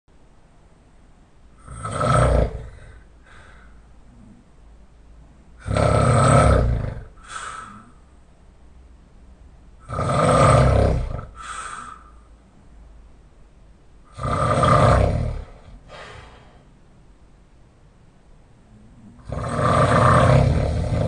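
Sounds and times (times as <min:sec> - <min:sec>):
loud open-mouth snoring: 0:01.6 - 0:03.0, 0:05.6 - 0:07.9, 0:09.8 - 0:12.0, 0:14.1 - 0:16.0, 0:19.2 - 0:21.0
quiet breath: 0:02.6 - 0:05.0, 0:07.1 - 0:08.3, 0:11.2 - 0:12.8, 0:15.4 - 0:17.1.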